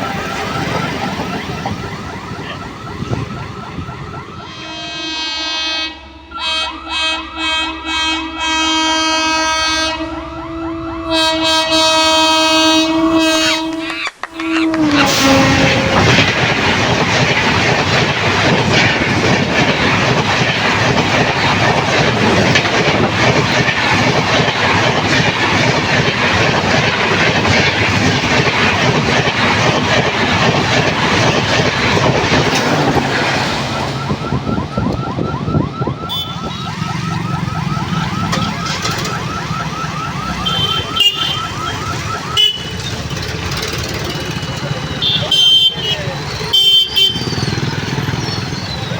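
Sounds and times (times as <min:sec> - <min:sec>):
repeating electronic alarm tone: 0:00.0 - 0:05.0, 0:32.3 - 0:45.3
train coaches rushing past: 0:00.0 - 0:48.9.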